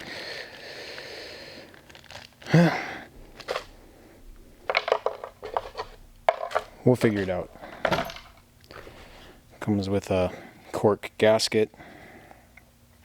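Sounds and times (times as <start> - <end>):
small parts rustling: 1.6 - 9.6
small parts clicking and clinking: 4.6 - 8.9.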